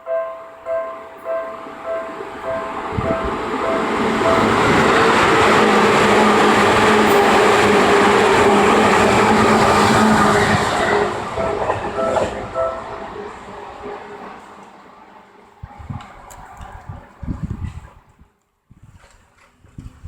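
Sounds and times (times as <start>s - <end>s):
electric train passing: 0.0s - 17.7s
wheels clattering on rails: 2.7s - 15.0s.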